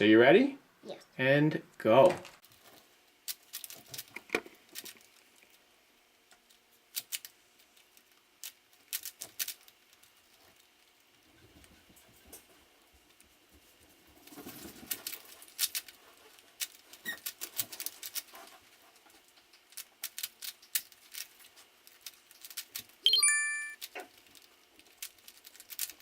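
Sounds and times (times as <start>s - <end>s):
loud high-pitched tone: 23.1s - 23.8s.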